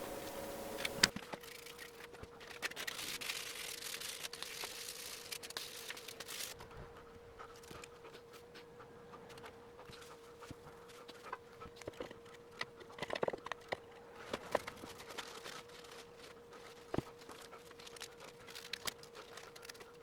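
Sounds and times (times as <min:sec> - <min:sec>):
faint steady hum: 0:00.0 - 0:01.1
hissing: 0:00.0 - 0:01.1
small clicks: 0:00.0 - 0:01.1.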